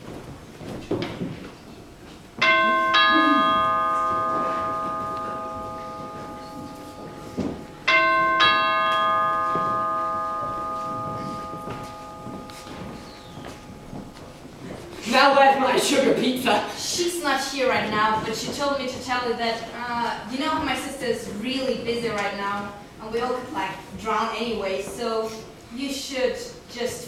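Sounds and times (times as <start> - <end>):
two-tone doorbell chime: 2.4 - 14.2.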